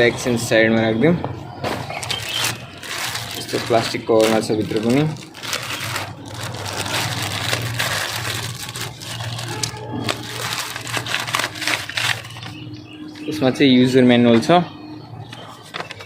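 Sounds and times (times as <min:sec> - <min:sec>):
plastic wrapping crinkling: 0:01.8 - 0:13.3, 0:15.4 - 0:16.0.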